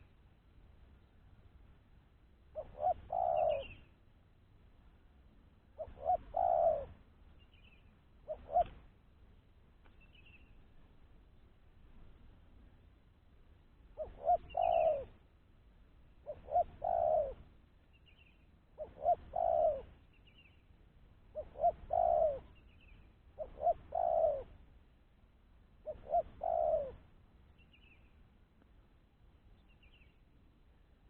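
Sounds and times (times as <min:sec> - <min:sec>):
dove cooing: 0:02.5 - 0:03.9, 0:05.8 - 0:07.0, 0:08.2 - 0:09.0, 0:14.0 - 0:15.2, 0:16.2 - 0:17.5, 0:18.8 - 0:20.0, 0:21.3 - 0:22.6, 0:23.3 - 0:24.6, 0:25.8 - 0:27.0
faint high bird chirps: 0:02.6 - 0:04.0, 0:09.8 - 0:10.6, 0:14.0 - 0:15.2, 0:16.2 - 0:24.5, 0:25.8 - 0:28.3.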